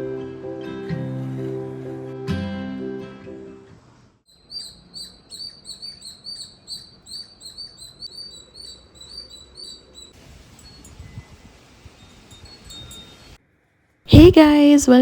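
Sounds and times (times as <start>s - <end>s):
small bird chirping: 4.3s - 11.4s.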